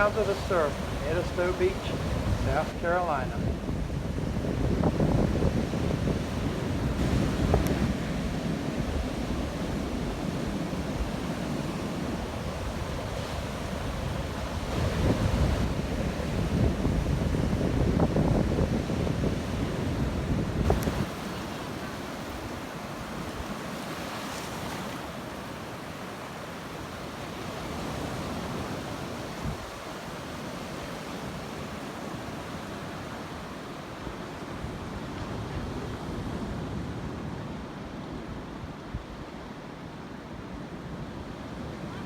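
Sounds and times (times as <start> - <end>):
wind rumble on microphone: 0.0 - 21.5, 27.7 - 29.9
waves breaking on beach: 0.0 - 42.0.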